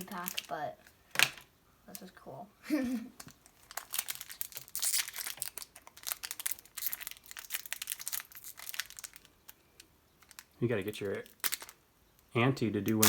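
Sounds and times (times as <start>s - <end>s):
foil wrapper crinkling: 0.0s - 0.7s, 3.2s - 11.8s.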